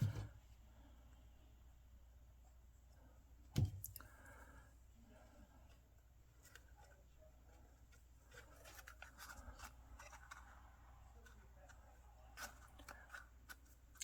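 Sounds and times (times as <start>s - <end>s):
cardstock taps and rustles: 3.6s - 4.0s.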